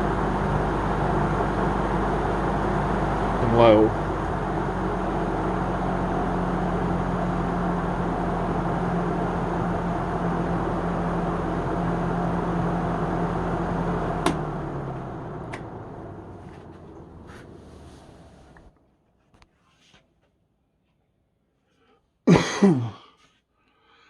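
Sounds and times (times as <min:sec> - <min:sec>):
box fan running: 0:00.0 - 0:18.8
fan switch click: 0:14.2 - 0:14.5.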